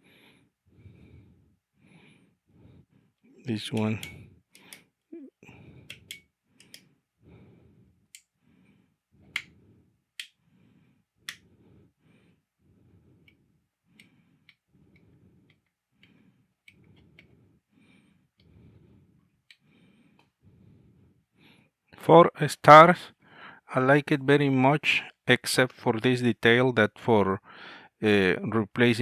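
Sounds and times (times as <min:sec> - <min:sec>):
light switches clicking: 0:03.7 - 0:04.8.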